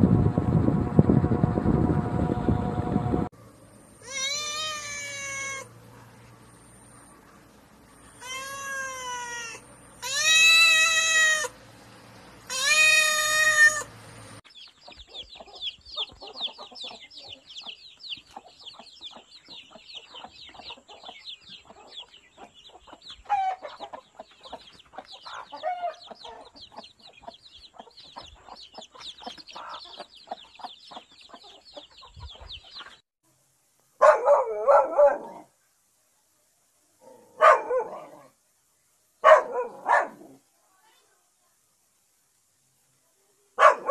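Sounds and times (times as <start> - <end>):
long rising and falling animal calls: 4.0 - 5.7
soft low animal calls: 4.0 - 5.8, 8.0 - 11.6.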